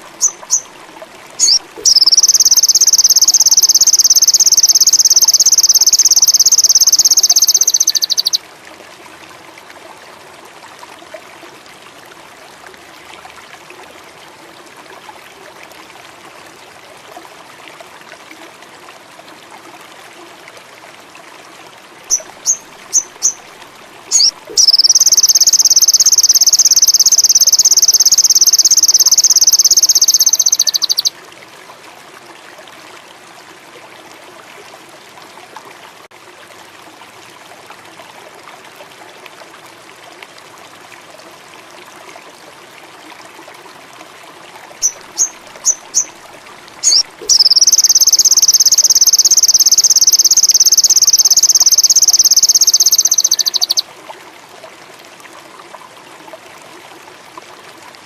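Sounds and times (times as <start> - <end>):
running water trickling: 0.0 - 58.0
songbird buzzing trill: 0.2 - 0.7, 1.4 - 8.4, 24.1 - 31.1, 46.8 - 53.8
short sharp bird chirps: 1.4 - 8.4, 24.1 - 26.8, 46.8 - 49.2.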